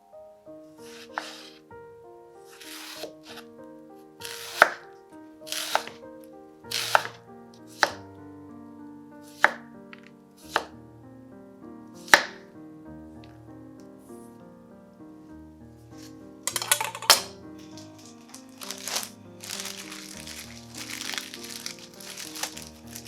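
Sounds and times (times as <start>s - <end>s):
background music: 0.0s - 23.0s
knife cutting on cutting board: 2.6s - 3.1s, 4.2s - 4.8s, 5.5s - 6.0s, 6.7s - 8.0s.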